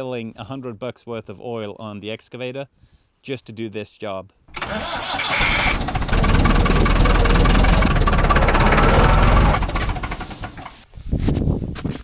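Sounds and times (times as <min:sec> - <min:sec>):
heavy diesel engine running: 0:04.6 - 0:10.8.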